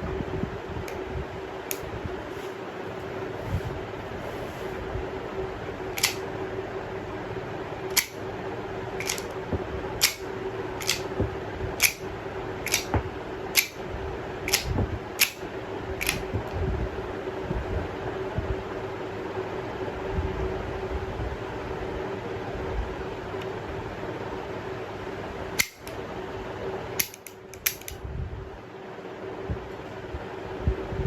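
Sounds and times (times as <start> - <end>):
steady low hum: 0.0 - 31.0
pistol metallic clicks: 6.0 - 6.2, 7.9 - 8.2, 9.0 - 9.3, 10.0 - 11.1, 11.8 - 12.9, 13.6 - 13.8, 14.5 - 15.4, 16.0 - 16.2, 25.6 - 26.0, 27.0 - 28.0.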